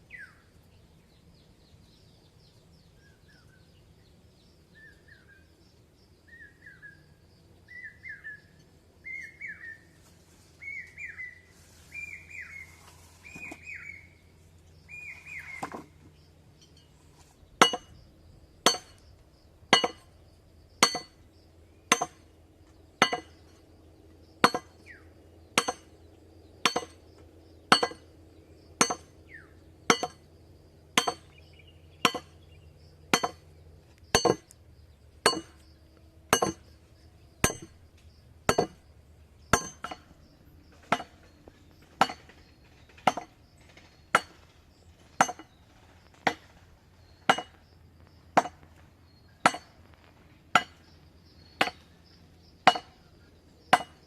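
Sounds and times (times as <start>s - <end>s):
metal knife chopping: 17.6s - 18.0s, 19.7s - 20.0s, 23.0s - 23.4s, 25.6s - 25.9s, 26.7s - 27.0s, 27.7s - 28.0s, 28.8s - 29.1s, 29.9s - 30.2s, 31.0s - 31.3s, 32.0s - 32.3s, 33.1s - 33.4s, 34.2s - 34.5s, 35.3s - 35.6s, 36.3s - 36.7s, 37.4s - 37.8s, 38.5s - 38.8s, 39.6s - 40.0s.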